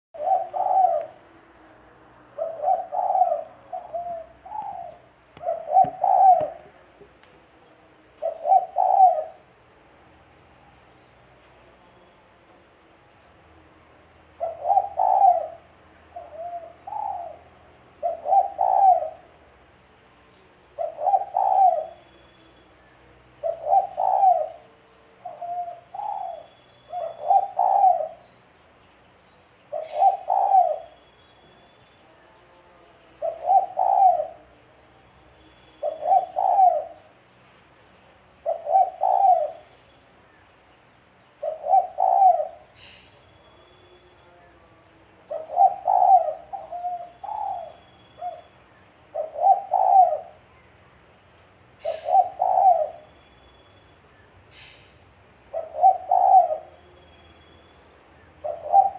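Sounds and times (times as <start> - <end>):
dove cooing: 0.2 - 1.3, 2.4 - 7.1, 8.2 - 9.5, 14.4 - 19.4, 20.8 - 22.1, 23.4 - 28.2, 29.7 - 31.0, 33.2 - 34.6, 35.8 - 37.2, 38.4 - 39.7, 41.4 - 43.0, 45.2 - 50.5, 51.8 - 53.1, 55.5 - 56.9, 58.4 - 58.9.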